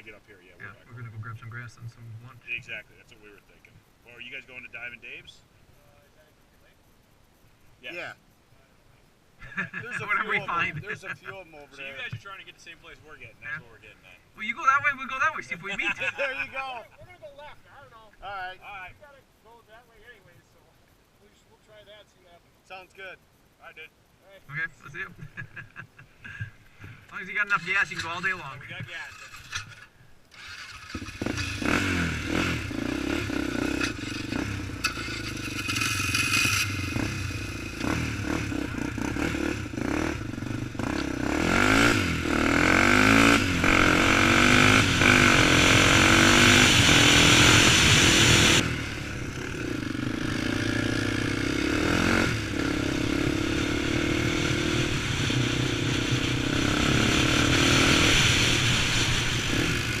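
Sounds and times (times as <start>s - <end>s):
quad engine accelerating: 29.1s - 60.0s.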